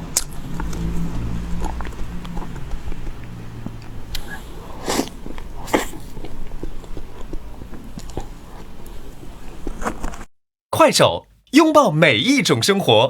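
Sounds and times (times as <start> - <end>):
wet chewing: 0.0 - 10.0
lip smacks: 0.2 - 0.9, 1.7 - 7.4.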